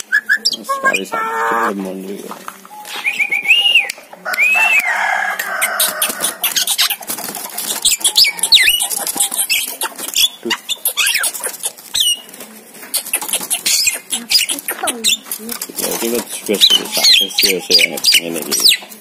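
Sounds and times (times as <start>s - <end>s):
bird harsh rasping call: 0.4s - 1.8s
bird whistled notes: 2.7s - 4.9s.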